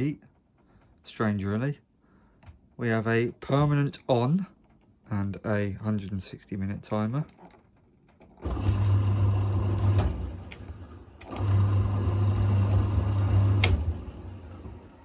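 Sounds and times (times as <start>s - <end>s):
tumble dryer motor humming: 8.4s - 15.0s.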